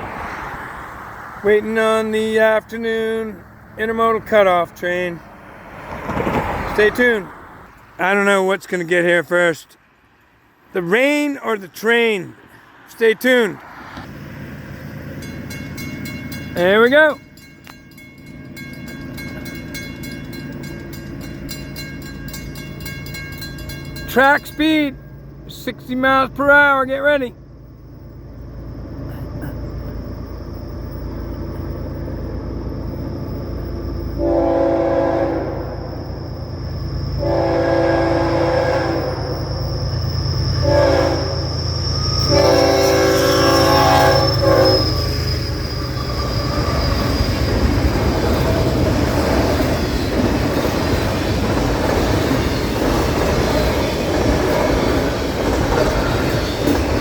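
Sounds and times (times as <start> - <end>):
train wheels rushing on rails: 0.0 - 7.3, 13.3 - 57.0
diesel locomotive rumble: 0.0 - 9.7, 10.6 - 57.0
train horn: 34.2 - 36.1, 37.2 - 39.6, 40.5 - 41.6, 42.2 - 45.0.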